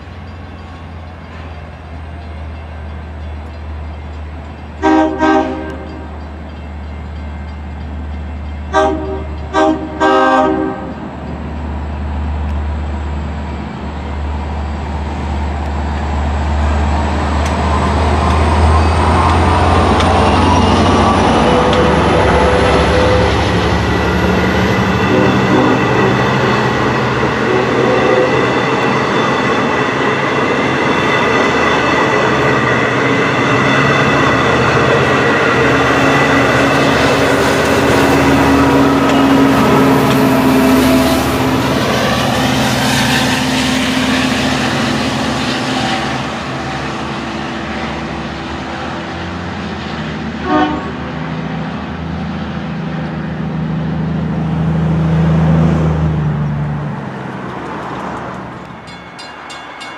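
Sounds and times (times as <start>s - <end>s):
train rumbling over rails: 0.0s - 59.9s
train horn blasts: 4.8s - 6.1s, 8.7s - 11.0s, 24.8s - 28.6s, 50.4s - 51.2s.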